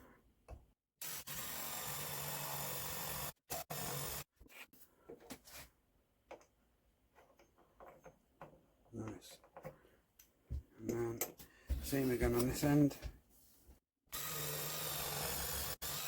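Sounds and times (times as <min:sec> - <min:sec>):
drill boring into wood: 0:01.0 - 0:04.3, 0:14.1 - 0:16.0.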